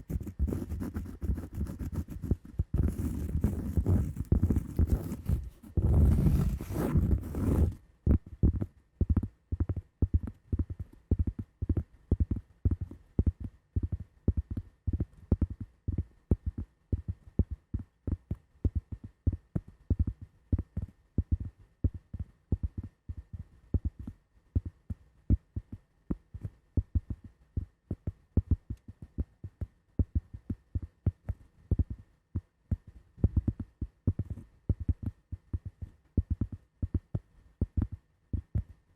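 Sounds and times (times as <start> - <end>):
scratching on cork and wood: 0.0 - 7.8.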